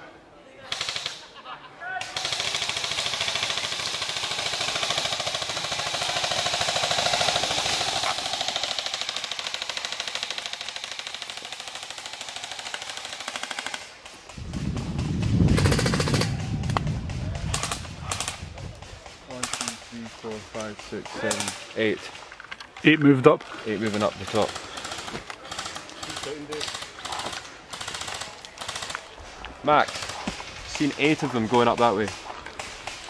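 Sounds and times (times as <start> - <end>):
airsoft gun automatic burst: 2.2 - 14.0, 15.4 - 16.4, 23.9 - 29.0
loud low rumble: 14.4 - 19.0.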